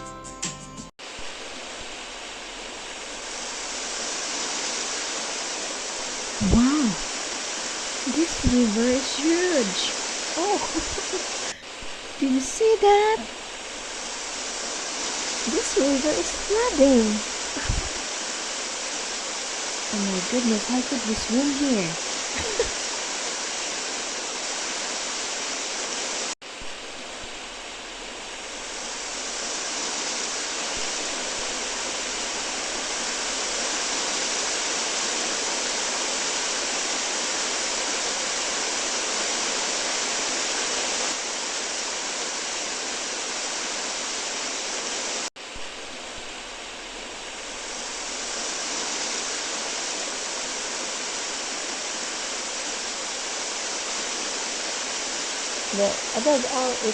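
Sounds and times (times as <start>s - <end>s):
flooding river rushing: 1.0s - 56.9s.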